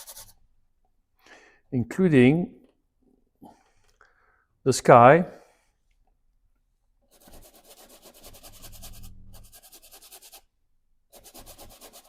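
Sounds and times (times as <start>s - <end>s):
paintbrush scrubbing on canvas: 0.0s - 0.4s, 7.1s - 10.5s, 11.1s - 12.0s.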